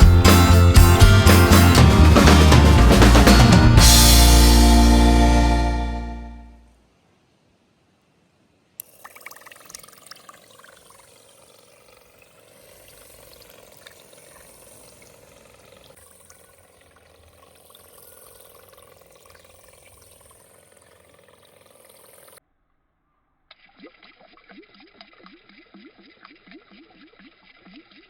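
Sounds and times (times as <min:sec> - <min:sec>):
propeller splashing water: 0:08.8 - 0:22.4, 0:23.5 - 0:28.0
small motor humming: 0:08.8 - 0:22.4.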